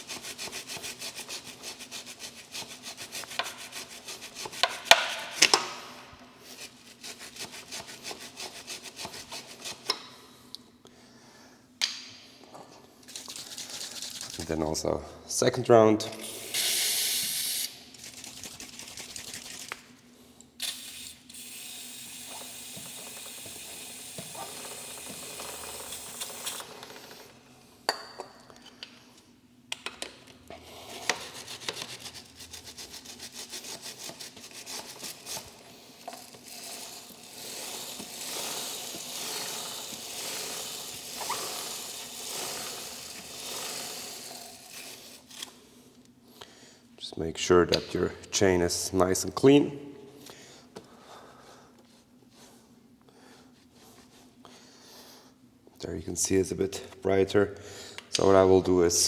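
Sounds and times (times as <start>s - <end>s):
brush scrubbing a chain: 0.0s - 5.5s, 6.4s - 9.9s, 13.1s - 14.8s, 17.9s - 19.8s, 20.7s - 27.2s, 30.8s - 45.5s
aerosol spray hissing: 16.2s - 17.9s, 20.6s - 26.7s, 36.5s - 45.2s.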